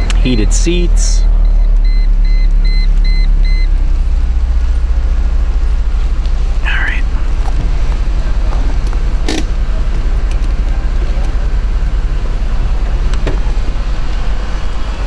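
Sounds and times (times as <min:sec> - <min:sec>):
convertible roof motor humming: 0:00.0 - 0:15.0
roof mechanism clunks: 0:08.8 - 0:09.7.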